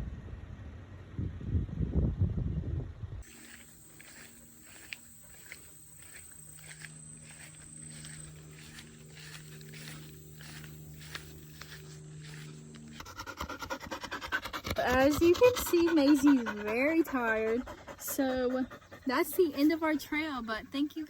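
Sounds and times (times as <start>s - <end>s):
footsteps on a trail: 3.2s - 17.4s
faint low pulsing hum: 3.2s - 21.0s.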